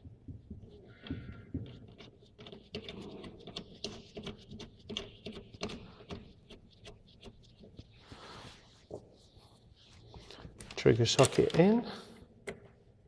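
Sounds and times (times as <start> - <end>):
welding hose fittings clicking and rattling: 10.6 - 11.8.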